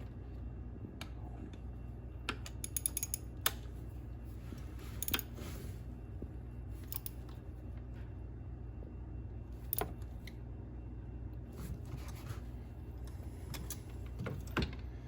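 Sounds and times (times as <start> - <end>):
steady low hum: 0.0 - 15.0
hand tools clicking and tapping: 2.4 - 3.6.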